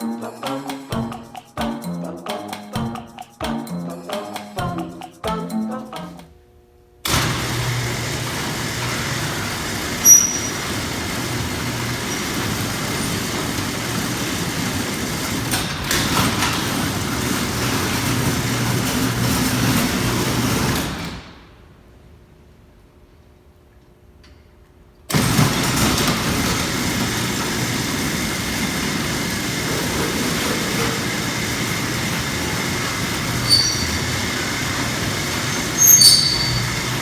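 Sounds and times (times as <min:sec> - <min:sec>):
opener motor hum: 0:07.0 - 0:21.6, 0:25.1 - 0:37.0
garage door rumbling and rattling: 0:07.0 - 0:21.8, 0:25.1 - 0:37.0
garage door squeak: 0:07.1 - 0:21.4, 0:25.1 - 0:37.0.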